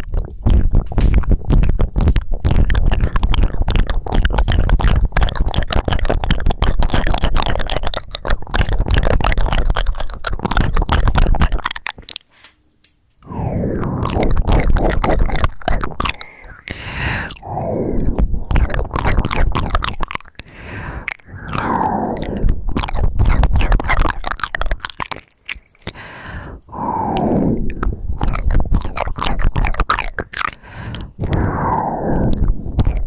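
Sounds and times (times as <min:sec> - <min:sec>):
wet lip and tongue clicks: 0:00.0 - 0:33.0
long breathy sigh: 0:16.4 - 0:18.0, 0:25.9 - 0:27.8.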